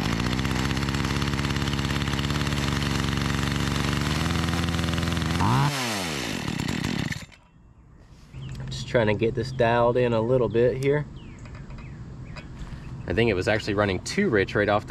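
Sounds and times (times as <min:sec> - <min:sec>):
chainsaw engine running: 0:00.0 - 0:07.4.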